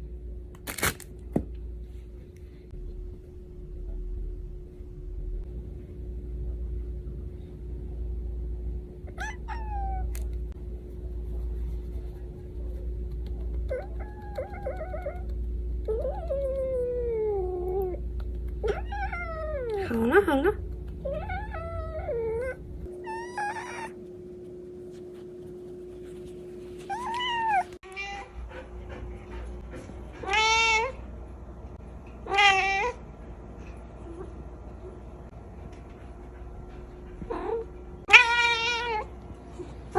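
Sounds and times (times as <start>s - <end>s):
cat meowing: 9.1s - 10.2s, 23.0s - 24.0s.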